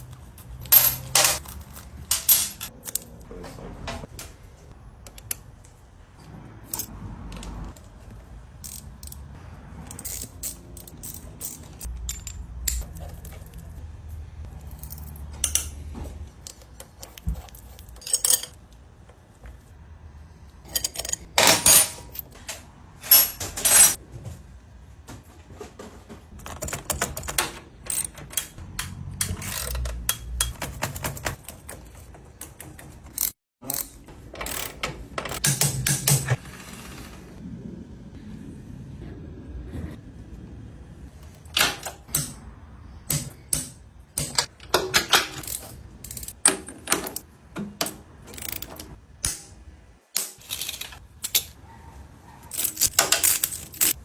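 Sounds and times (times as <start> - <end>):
metallic clicks and rattles of tools: 0.0 - 3.3, 8.6 - 13.8, 14.4 - 18.7, 20.6 - 24.0, 26.4 - 36.4, 41.3 - 42.4, 43.1 - 49.5, 50.2 - 51.6, 52.5 - 54.0
loud metal clanks: 23.0 - 24.0.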